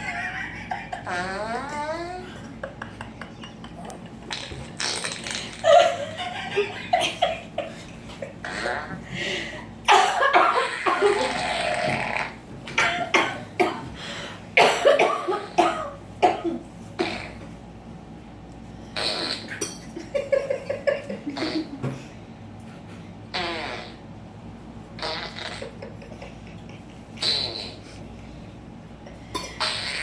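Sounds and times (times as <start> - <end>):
person laughing hard: 0.0 - 1.4, 2.2 - 4.8, 5.4 - 8.9, 25.6 - 27.2
wheezy breaths: 9.0 - 9.8, 14.0 - 14.5
person coughing: 9.9 - 11.4, 12.8 - 13.9, 14.6 - 17.4.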